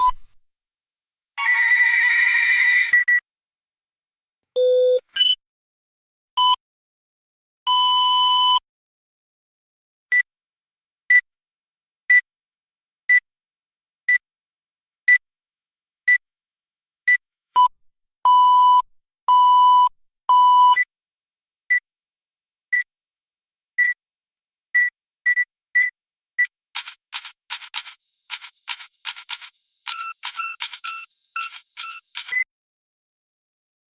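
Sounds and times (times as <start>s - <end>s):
autoclave electronic beeps: 26.8s - 32.4s.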